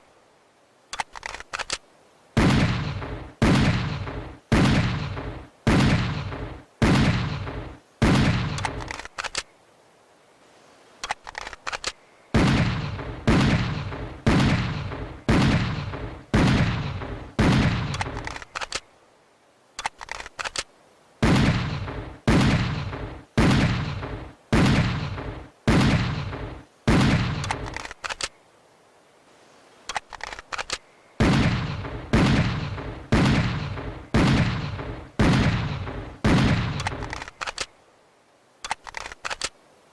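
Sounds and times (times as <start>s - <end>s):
faint clicks: 0.9s - 1.9s, 8.5s - 9.5s, 11.0s - 12.1s, 17.9s - 18.9s, 19.7s - 20.7s, 27.4s - 28.4s, 29.8s - 30.9s, 36.8s - 37.8s, 38.6s - 39.6s.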